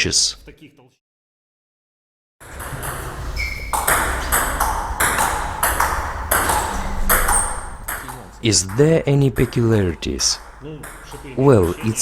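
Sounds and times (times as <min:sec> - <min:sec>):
high squeak: 0:02.5 - 0:08.3
table tennis ball hits: 0:02.5 - 0:12.0.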